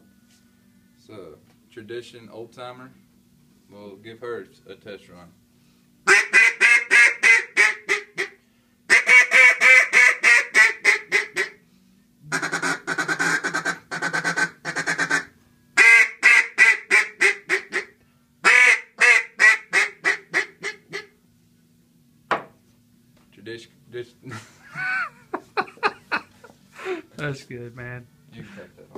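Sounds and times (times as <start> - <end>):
duck call quacks: 6.1 - 11.6, 12.3 - 21.1.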